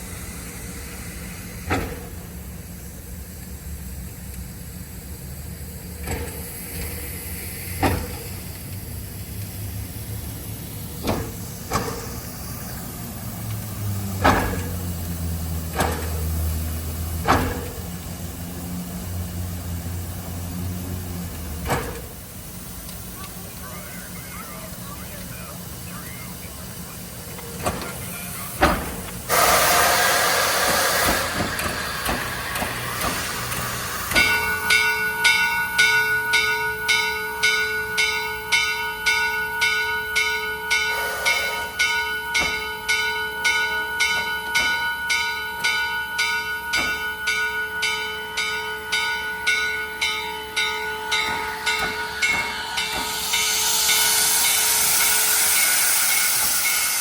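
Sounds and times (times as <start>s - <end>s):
steam hissing: 0.0s - 36.4s, 40.7s - 45.4s, 50.5s - 57.0s
locomotive bell ringing: 22.4s - 29.5s, 33.8s - 57.0s.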